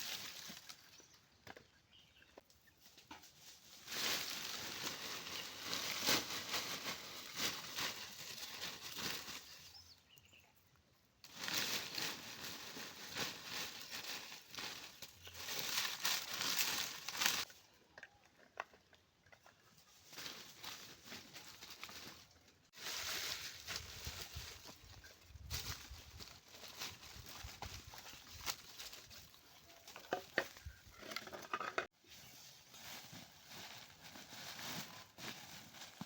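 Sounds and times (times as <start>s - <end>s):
dry material rustling and crinkling: 3.4s - 9.8s, 11.2s - 17.5s, 19.9s - 36.0s.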